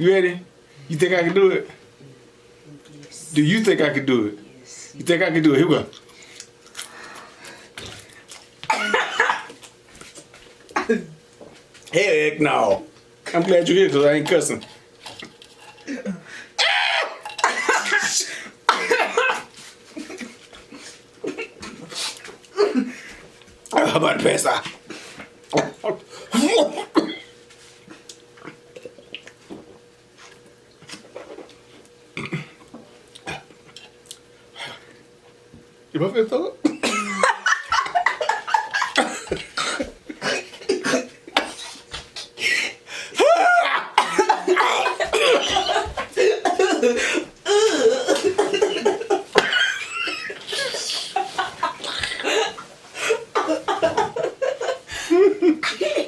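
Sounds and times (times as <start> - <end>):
faint steady hum: 0.0 - 56.0
person coughing: 8.7 - 9.6, 17.4 - 19.5, 25.5 - 27.3, 32.2 - 32.6, 36.6 - 37.3, 39.0 - 41.8, 43.9 - 49.0, 51.9 - 54.0, 55.0 - 56.0
person laughing: 17.0 - 21.9, 22.6 - 23.0, 36.7 - 56.0
person making throaty noises: 32.2 - 32.6, 46.2 - 48.3.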